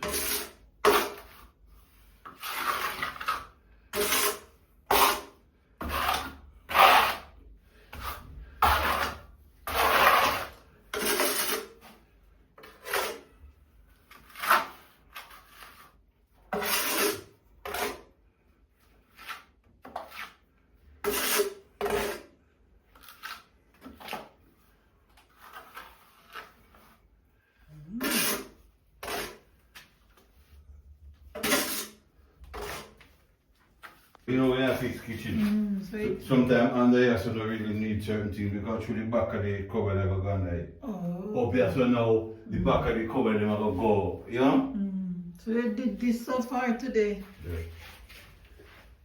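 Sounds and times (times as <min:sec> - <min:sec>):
rasp scraping on wood: 0:08.0 - 0:11.9.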